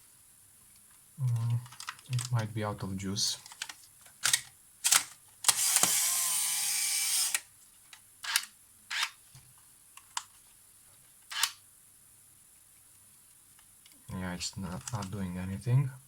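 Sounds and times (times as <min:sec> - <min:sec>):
camera mechanical clicks: 0:04.2 - 0:07.5, 0:08.2 - 0:09.2, 0:11.3 - 0:11.6
camera motor whirring: 0:05.5 - 0:07.5.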